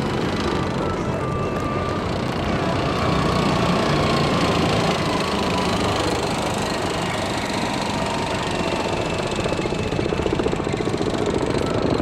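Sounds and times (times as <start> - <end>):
heavy engine pulsing: 0.0 - 12.0.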